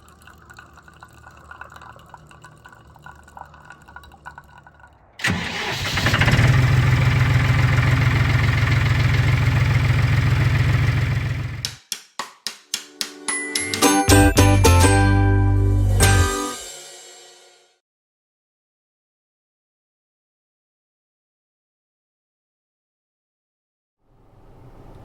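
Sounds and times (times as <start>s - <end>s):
engine running loud: 5.2s - 11.6s.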